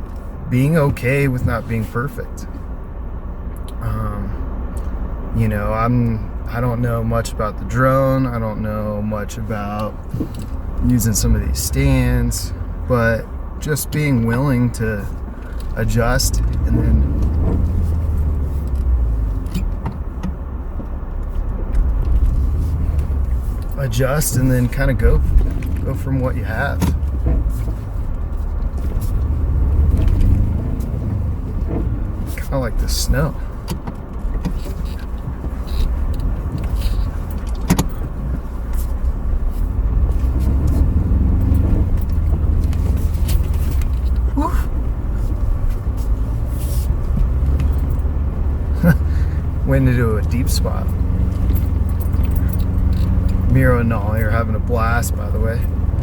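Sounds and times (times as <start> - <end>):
pickup engine rumble: 0.0 - 56.0
light knocks and rattles: 15.1 - 56.0
knocks and rattles: 15.6 - 32.5.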